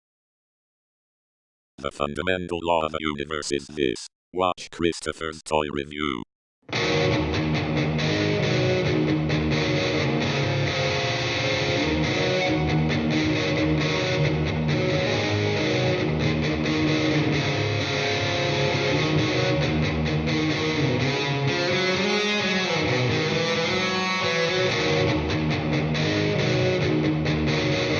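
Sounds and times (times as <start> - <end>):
guitar instrumental music: 6.7 - 27.9.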